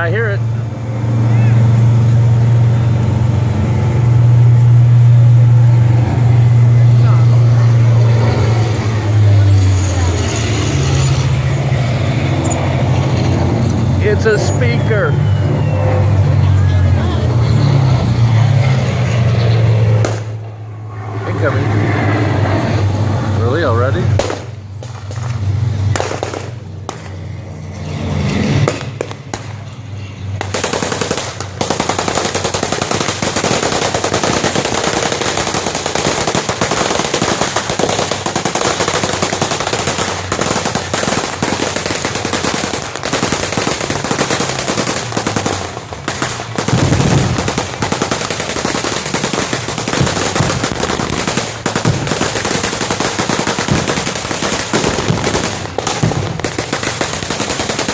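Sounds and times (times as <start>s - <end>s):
machine guns firing: 24.2s - 25.3s, 25.9s - 27.0s, 30.4s - 57.9s.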